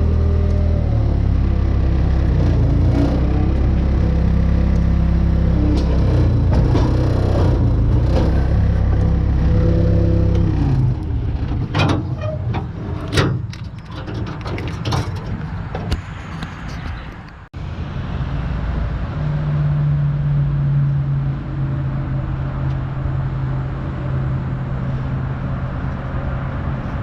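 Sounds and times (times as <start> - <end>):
engine running: 0.0 - 16.8, 17.5 - 27.0
sharp knocks and clatters: 5.7 - 9.4, 10.3 - 17.3.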